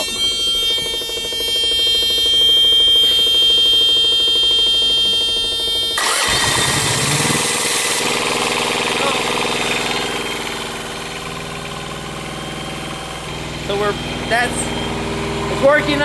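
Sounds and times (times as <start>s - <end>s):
warning buzzer: 0.0s - 16.0s
diesel engine cranking and starting: 5.0s - 16.0s.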